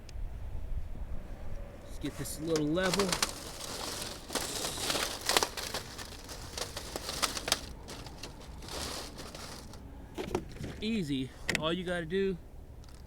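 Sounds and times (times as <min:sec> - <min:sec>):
plastic crinkling: 0:02.4 - 0:09.8.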